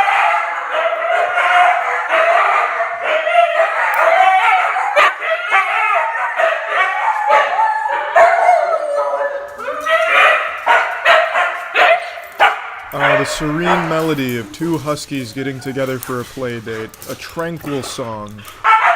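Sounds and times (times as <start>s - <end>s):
dog yelps: 0.0s - 14.4s, 18.6s - 18.9s
huskies howl-like whining: 0.0s - 16.0s, 18.6s - 18.9s.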